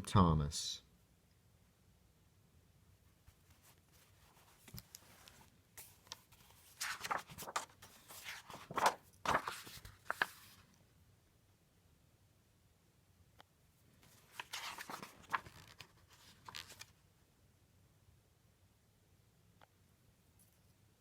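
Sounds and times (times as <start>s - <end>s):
paper pages rustling: 3.4s - 10.7s, 14.0s - 17.0s.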